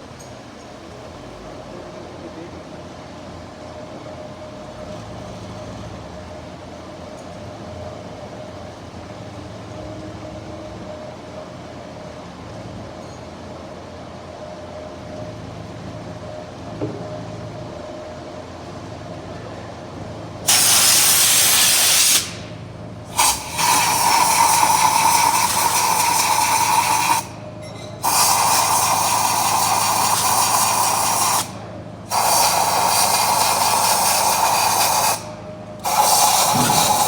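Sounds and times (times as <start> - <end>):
compressed air hissing from blow gun: 20.5 - 22.5, 23.1 - 27.3, 28.0 - 37.0.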